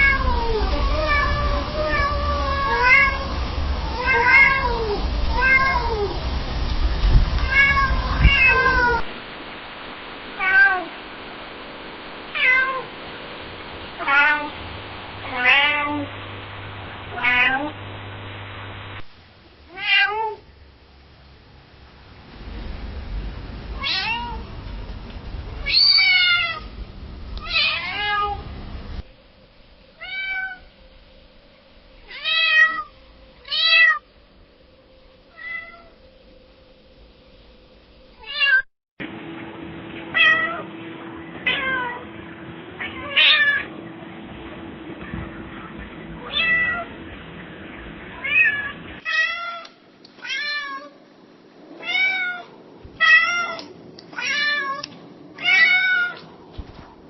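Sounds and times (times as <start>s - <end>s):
cats meowing: 0.0s - 6.2s, 7.4s - 9.1s, 12.3s - 12.9s, 14.0s - 14.6s, 15.2s - 16.1s, 17.1s - 17.7s, 19.7s - 20.4s, 23.8s - 24.5s, 25.6s - 26.7s, 27.4s - 28.4s, 41.4s - 42.0s, 42.8s - 43.7s, 46.2s - 46.9s, 48.1s - 51.0s, 51.7s - 56.3s
faint steady hum: 0.0s - 57.0s.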